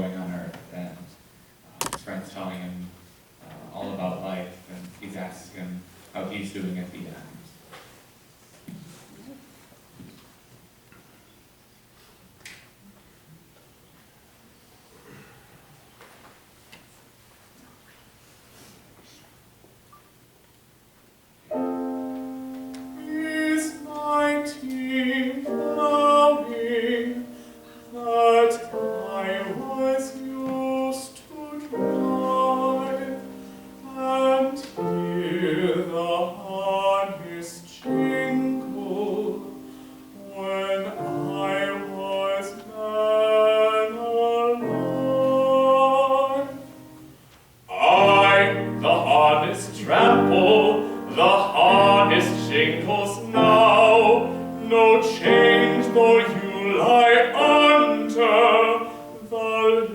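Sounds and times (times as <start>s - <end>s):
classical solo voice singing: 21.5s - 47.1s, 47.7s - 59.9s
piano accompaniment: 21.5s - 59.9s.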